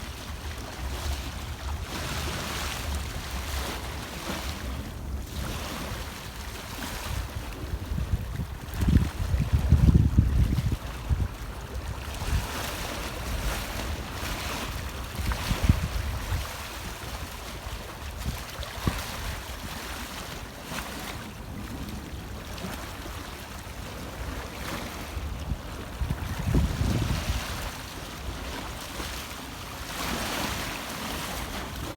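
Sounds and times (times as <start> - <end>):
sea waves breaking: 0.0 - 31.9
wind buffeting microphone: 0.1 - 20.1, 23.8 - 29.2.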